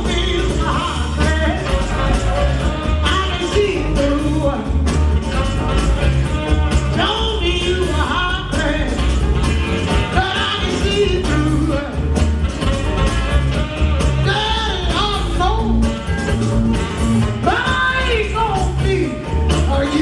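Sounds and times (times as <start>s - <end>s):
person singing: 0.0s - 4.9s, 6.9s - 9.0s, 10.1s - 12.0s, 14.2s - 15.9s, 17.4s - 20.0s
dance song with heavy bass beat: 0.0s - 20.0s.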